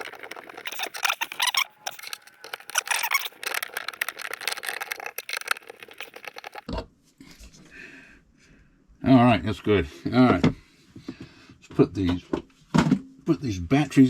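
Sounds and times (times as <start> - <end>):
screwdriver clicks and squeaks: 0.0 - 6.7.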